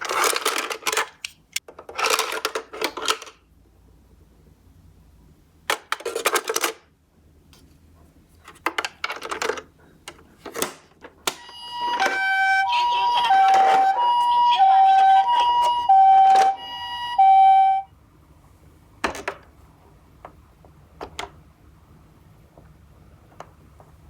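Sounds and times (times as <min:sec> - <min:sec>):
toy cars clattering: 0:00.0 - 0:03.4, 0:05.7 - 0:06.9, 0:08.4 - 0:16.6.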